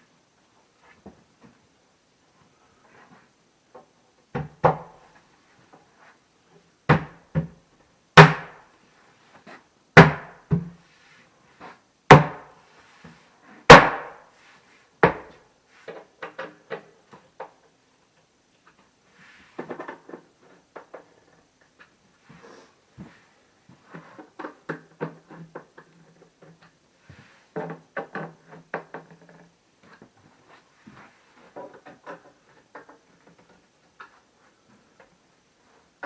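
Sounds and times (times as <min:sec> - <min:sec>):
knocks on wooden panels: 0:04.3 - 0:05.0, 0:06.9 - 0:07.6, 0:08.2 - 0:08.6, 0:10.0 - 0:10.8, 0:12.1 - 0:12.5, 0:13.7 - 0:14.2, 0:15.0 - 0:15.4.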